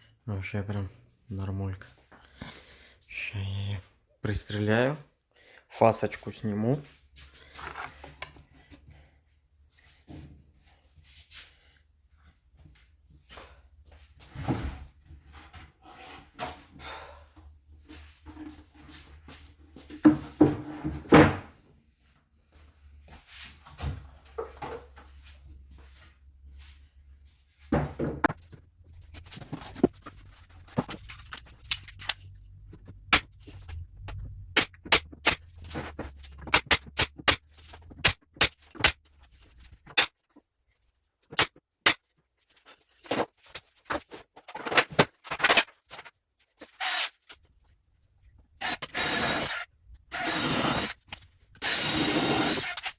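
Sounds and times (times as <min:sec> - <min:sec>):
low steady hum: 0:28.3 - 0:38.1.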